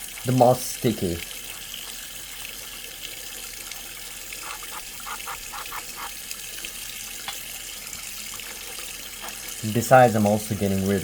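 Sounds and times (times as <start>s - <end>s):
tap water running into sink: 0.0s - 11.0s
short squeaks of rubbing: 4.4s - 6.1s.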